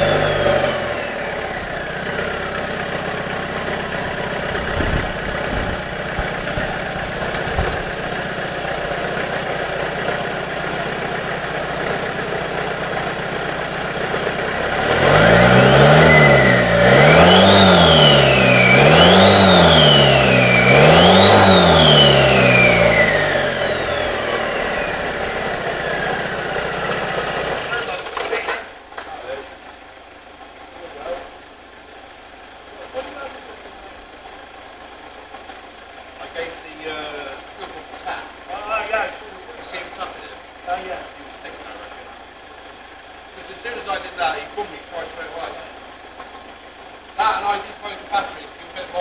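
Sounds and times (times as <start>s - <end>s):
high turbo whine: 0.0s - 28.0s
diesel engine idling and revving: 0.0s - 49.0s.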